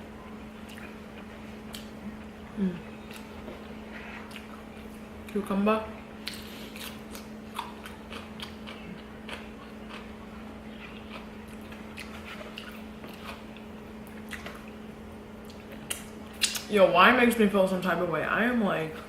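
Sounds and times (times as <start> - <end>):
steady low hum: 0.0 - 19.0
person chewing food: 0.6 - 5.4, 6.2 - 14.8, 15.4 - 16.7.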